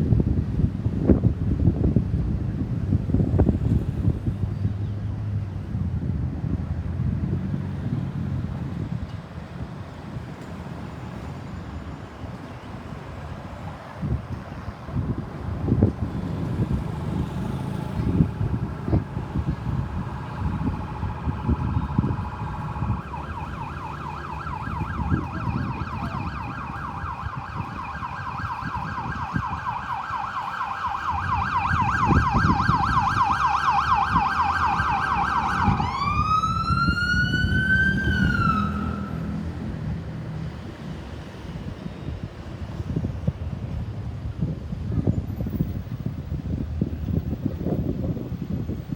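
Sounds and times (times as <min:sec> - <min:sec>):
road traffic rumble: 0:00.0 - 0:48.9
ambulance siren: 0:16.1 - 0:39.9.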